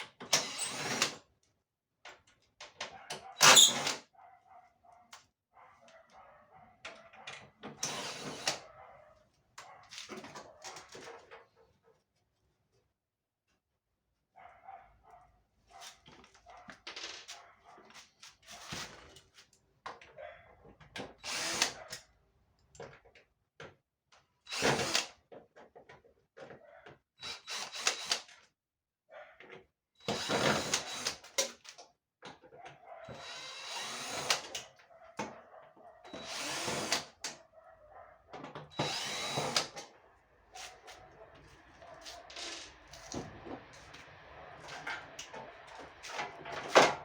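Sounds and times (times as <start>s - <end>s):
power drill running in bursts: 0.3s - 1.2s, 7.8s - 8.6s, 21.2s - 21.8s, 24.5s - 25.1s, 27.2s - 28.2s, 30.1s - 31.2s, 33.2s - 34.6s, 36.1s - 37.1s, 38.7s - 39.8s.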